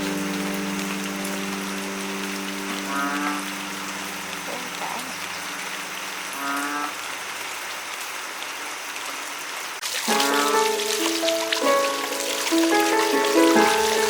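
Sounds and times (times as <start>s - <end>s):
music: 0.0s - 6.4s, 10.0s - 14.0s
heavy rain falling: 0.0s - 14.0s.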